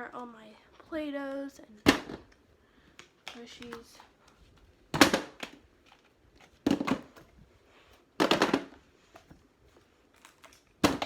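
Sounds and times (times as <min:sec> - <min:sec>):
toys clattering into bin: 0:04.9 - 0:07.3, 0:08.2 - 0:09.3, 0:10.2 - 0:11.0.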